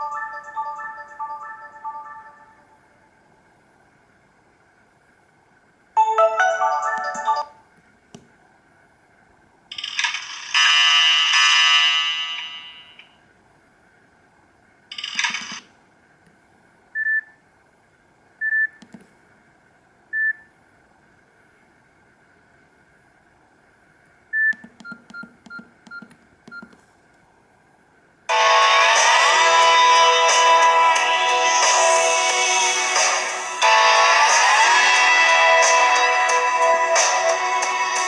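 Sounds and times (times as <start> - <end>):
phone melodic jingle: 0.0 - 2.7, 6.0 - 7.6
phone chord tone: 6.0 - 7.6.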